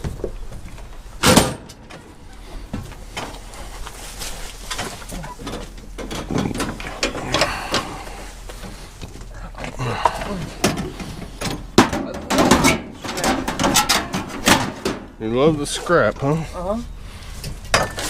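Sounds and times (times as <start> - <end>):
scrap metal clattering: 10.0 - 15.2.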